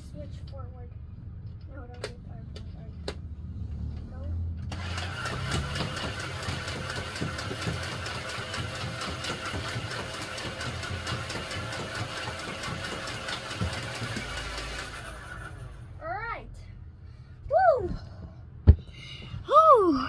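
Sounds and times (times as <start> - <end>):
toy gun motor whine: 4.7 - 6.5
rapid clicks of darts firing: 4.7 - 15.4.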